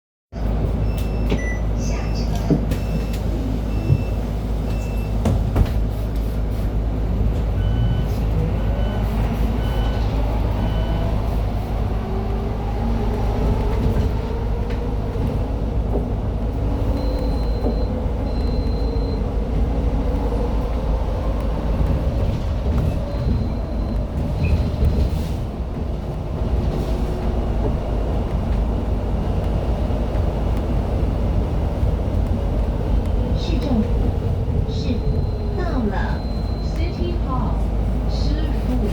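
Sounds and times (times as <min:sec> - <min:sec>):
road rumble in bus cabin: 0:00.3 - 0:38.9
short electronic beeps: 0:17.0 - 0:19.2, 0:34.8 - 0:37.2
higher beeps: 0:34.8 - 0:37.3.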